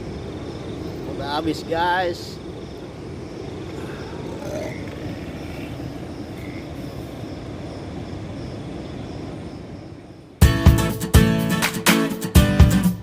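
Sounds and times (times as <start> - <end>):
low outdoor rumble: 0.0 - 10.4
strummed acoustic guitar: 10.4 - 13.0.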